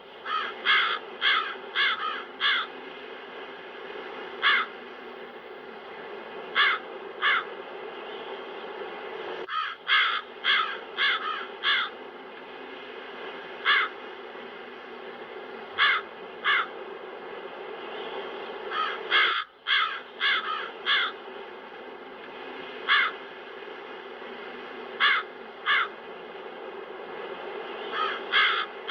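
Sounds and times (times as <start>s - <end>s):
steady wind: 0.0s - 28.9s
crows cawing: 0.2s - 2.8s, 4.4s - 4.8s, 6.5s - 7.5s, 9.5s - 12.0s, 13.6s - 14.0s, 15.8s - 16.7s, 18.7s - 21.2s, 22.8s - 23.2s, 25.0s - 26.0s, 27.9s - 28.9s.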